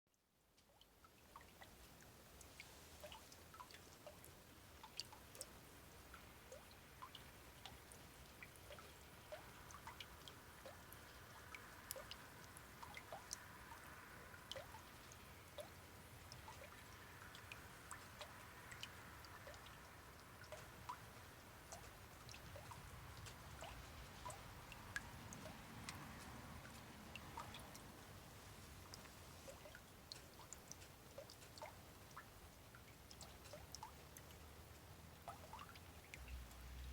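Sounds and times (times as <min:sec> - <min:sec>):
faint hiss: 0:00.6 - 0:36.9
water drops plinking in puddle: 0:04.8 - 0:27.8.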